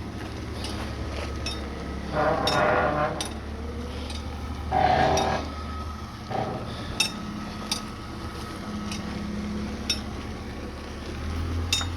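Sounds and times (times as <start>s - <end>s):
steady low hum: 0.0s - 11.9s
metal tools clinking: 1.4s - 1.7s.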